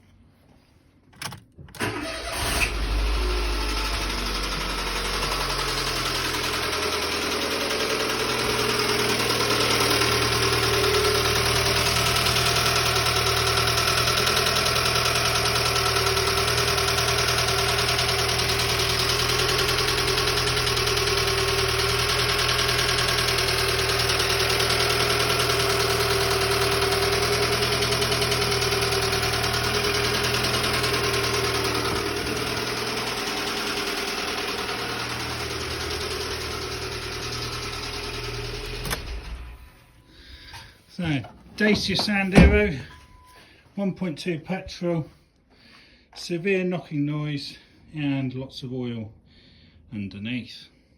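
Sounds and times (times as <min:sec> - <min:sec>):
car engine starting and idling: 0:01.2 - 0:43.3
engine knocking: 0:03.7 - 0:38.8.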